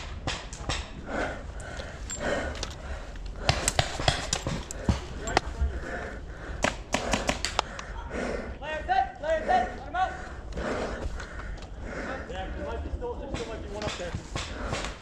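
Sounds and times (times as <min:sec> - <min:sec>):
breathing: 0:01.0 - 0:08.6, 0:09.4 - 0:12.8, 0:14.3 - 0:15.0.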